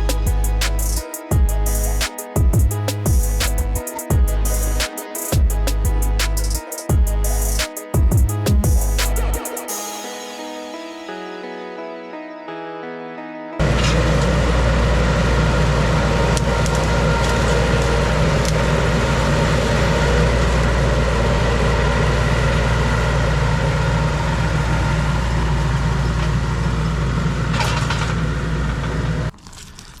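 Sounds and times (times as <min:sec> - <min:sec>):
skid steer engine running: 0:13.6 - 0:29.3.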